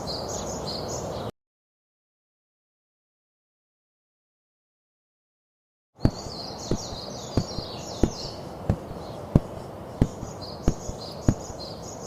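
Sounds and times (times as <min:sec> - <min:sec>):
low thumps: 0:06.0 - 0:11.6
high fluttering chirping: 0:06.0 - 0:12.0.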